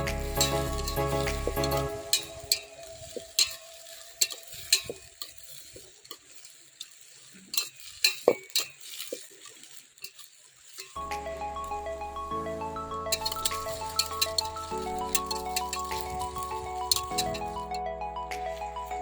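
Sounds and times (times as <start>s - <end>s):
background music: 0.0s - 3.5s, 11.0s - 19.0s
metal spoon scraping a pot: 0.0s - 11.0s, 13.1s - 17.7s
food sizzling in a pot: 0.0s - 17.8s
spoon clinking against pot: 13.1s - 17.7s.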